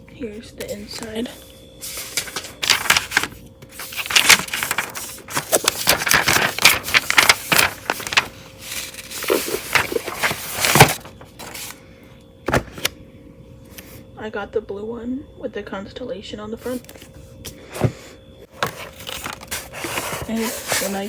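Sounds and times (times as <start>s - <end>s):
packaging rustling and crinkling: 1.8s - 11.8s, 18.5s - 21.0s.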